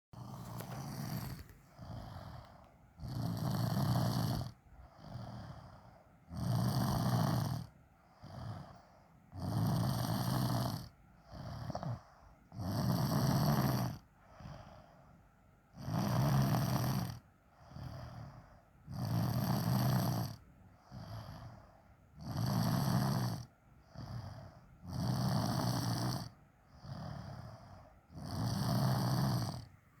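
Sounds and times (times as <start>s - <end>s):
soft breath: 0.2s - 6.3s, 7.7s - 9.3s, 11.1s - 12.5s, 14.0s - 15.5s, 17.4s - 18.9s, 20.7s - 22.1s, 26.6s - 28.1s
person snoring heavily: 0.2s - 14.8s, 15.8s - 29.7s.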